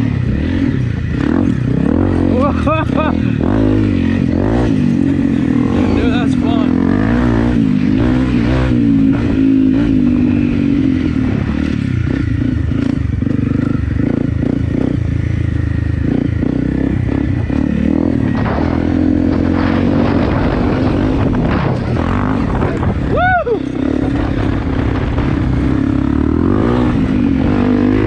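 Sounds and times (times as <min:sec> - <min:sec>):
knocks and rattles over rough ground: 0:00.0 - 0:28.0
motorcycle engine revving: 0:00.0 - 0:28.0.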